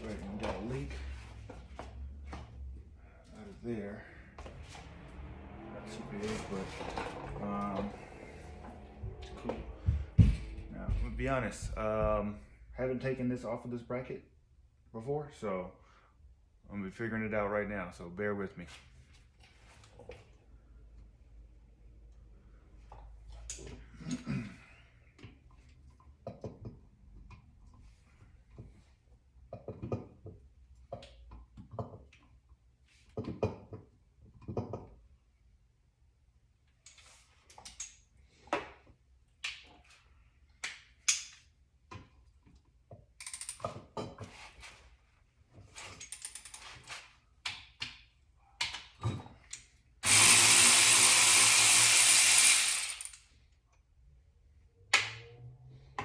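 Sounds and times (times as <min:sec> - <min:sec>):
metal tools clinking: 0:45.7 - 0:47.0, 0:49.5 - 0:53.2
cordless ratchet running: 0:50.0 - 0:53.2.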